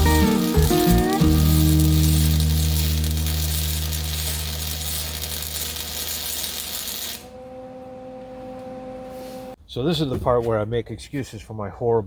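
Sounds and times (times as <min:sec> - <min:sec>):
steady hiss: 0:00.0 - 0:07.3
background music low chord: 0:07.2 - 0:09.6.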